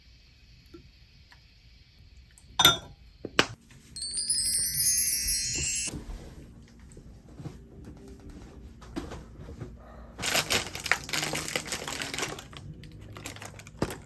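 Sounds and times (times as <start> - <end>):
rising chime run: 4.0 - 5.9.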